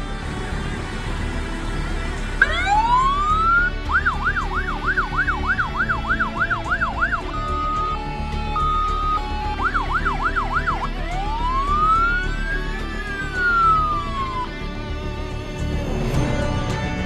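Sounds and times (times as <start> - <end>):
steady low hum: 0.0 - 3.9
fire truck siren: 0.0 - 14.6.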